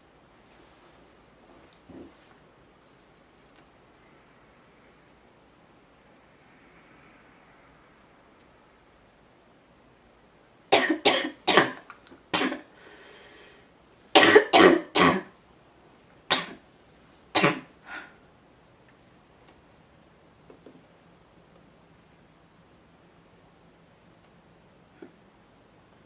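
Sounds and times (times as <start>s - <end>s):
woman coughing: 10.8s - 12.6s, 14.2s - 15.3s, 17.4s - 17.7s
drawn breath: 12.8s - 13.7s.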